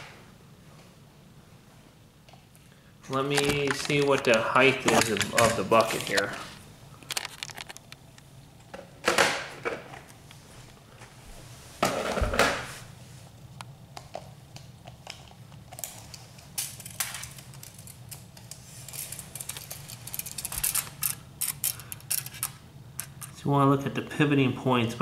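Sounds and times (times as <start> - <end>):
plastic and metal clicks and rattles: 3.2 - 6.3, 7.0 - 8.0, 15.0 - 23.3.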